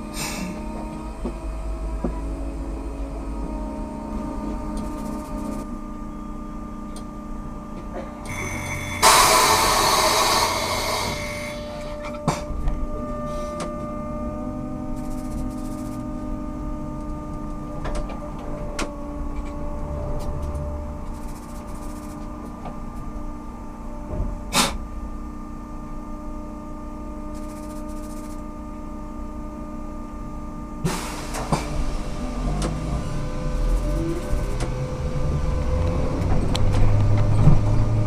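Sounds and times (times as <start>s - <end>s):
trolleybus electrical hum: 0.0s - 38.0s
short hissing rush: 8.3s - 11.8s.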